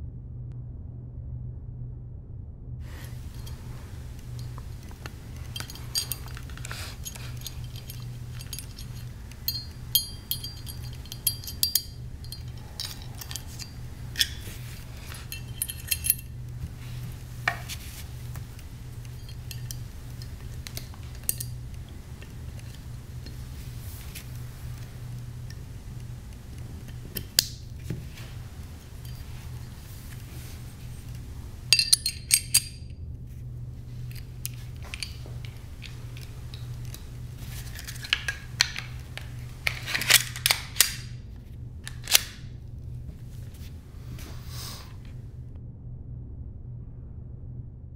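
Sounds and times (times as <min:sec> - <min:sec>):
steady low hum: 0:00.0 - 0:47.9
hard objects clinking: 0:03.0 - 0:32.9, 0:34.0 - 0:41.1.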